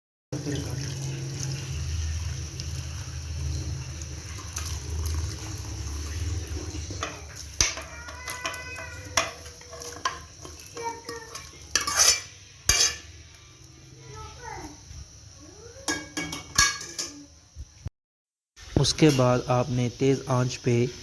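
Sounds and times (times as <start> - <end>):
metal spoon clinking on cookware: 7.0 - 13.2, 15.9 - 17.3.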